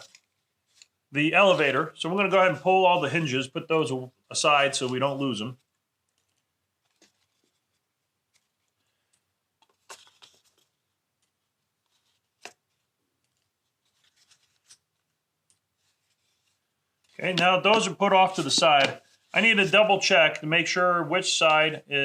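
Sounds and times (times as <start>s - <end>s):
faint clicks and scrapes: 0.0s - 1.0s, 5.6s - 17.3s.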